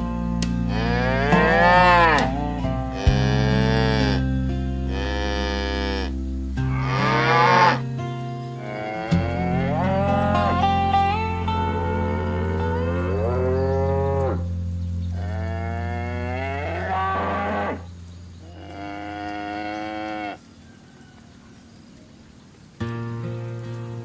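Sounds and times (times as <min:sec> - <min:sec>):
background music with low chords: 0:00.0 - 0:18.4
cows mooing: 0:00.7 - 0:08.0, 0:08.6 - 0:20.5.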